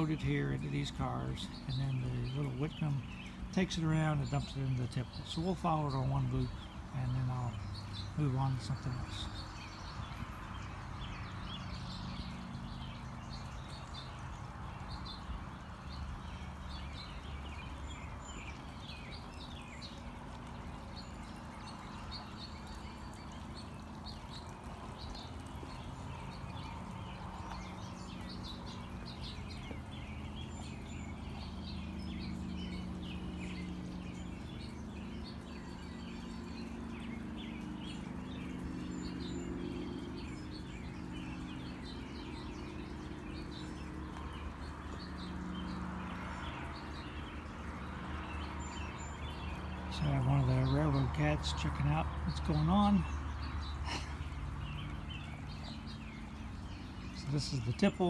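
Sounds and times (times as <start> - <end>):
birds chirping: 0.0 - 58.0.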